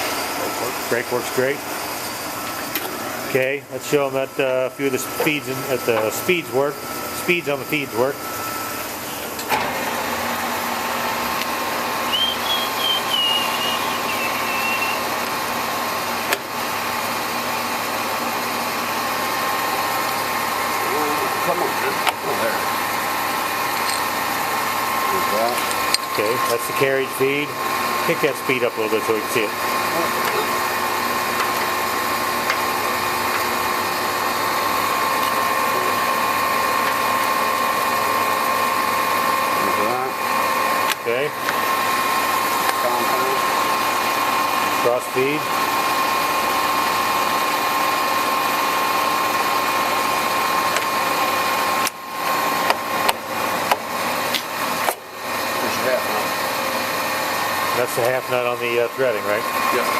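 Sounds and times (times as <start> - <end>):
lathe running: 0.0 - 59.9
lathe clunks: 9.3 - 9.9
wavering high tone: 12.1 - 15.1.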